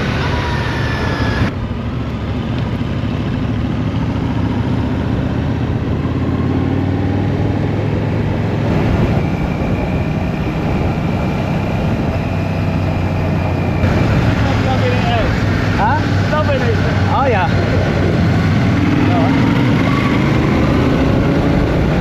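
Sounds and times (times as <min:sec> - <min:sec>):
motorcycle engine running: 0:00.0 - 0:22.0
wind noise: 0:04.2 - 0:22.0.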